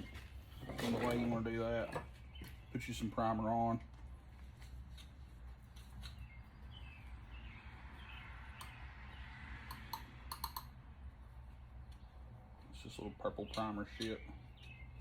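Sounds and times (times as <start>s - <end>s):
faint clicks and handling noise: 3.8s - 6.3s.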